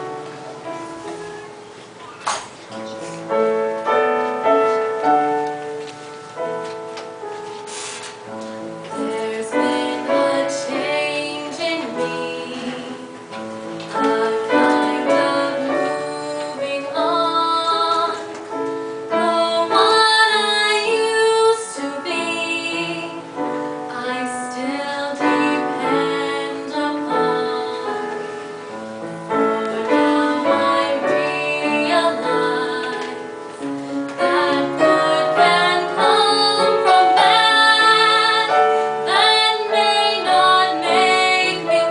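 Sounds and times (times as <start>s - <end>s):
piano accompaniment: 0.0s - 41.9s
woman singing slow song: 9.0s - 13.2s, 19.2s - 23.3s, 23.9s - 28.1s, 29.6s - 33.4s, 34.2s - 41.9s.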